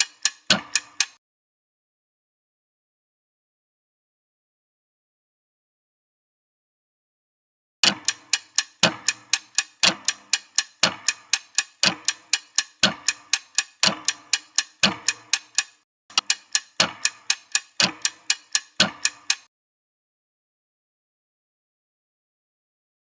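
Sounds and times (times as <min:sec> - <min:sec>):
clock ticking: 0:00.0 - 0:01.2, 0:07.8 - 0:19.5.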